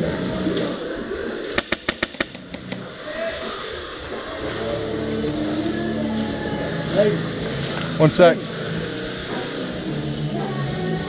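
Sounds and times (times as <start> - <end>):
airsoft gun shots: 1.6 - 2.8.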